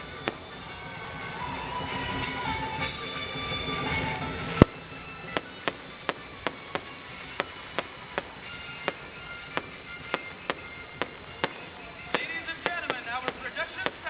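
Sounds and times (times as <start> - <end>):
faint music: 0.0 - 14.0
sharp short cracks: 4.6 - 14.0.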